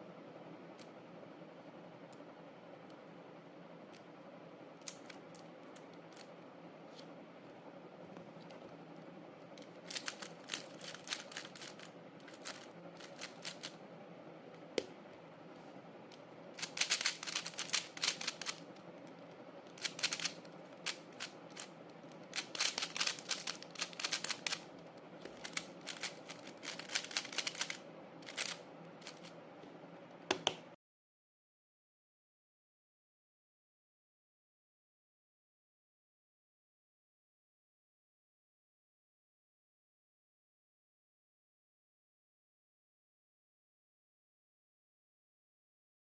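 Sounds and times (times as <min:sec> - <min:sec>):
puzzle cube clicking turns: 0:04.8 - 0:06.3, 0:09.6 - 0:13.8, 0:16.6 - 0:18.7, 0:19.7 - 0:24.7, 0:25.3 - 0:29.3.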